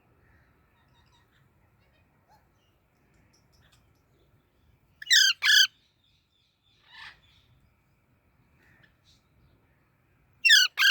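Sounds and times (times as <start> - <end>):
faint bird chirps: 0.0 - 7.8
parrot squawking: 5.0 - 5.7, 10.5 - 10.9.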